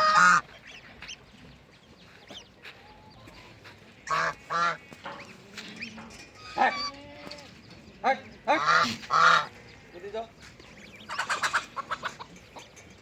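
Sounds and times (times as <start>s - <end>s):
waterfowl honking: 0.0s - 1.2s, 4.0s - 5.0s, 6.4s - 7.3s, 8.5s - 9.6s, 11.0s - 12.3s.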